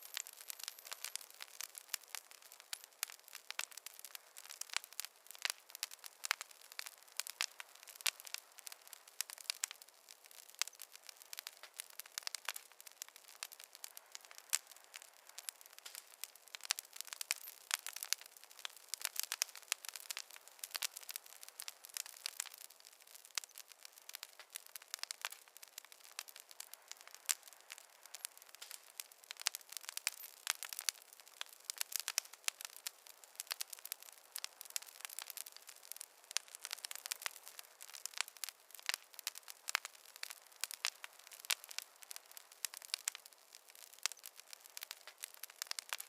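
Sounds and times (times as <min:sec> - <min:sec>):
faint hiss: 0:00.0 - 0:46.0
wood fire crackling: 0:00.0 - 0:46.0.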